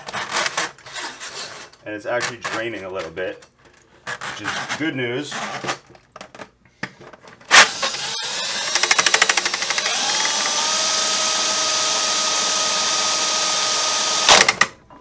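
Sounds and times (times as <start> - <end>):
cordless drill whining: 7.5 - 14.7.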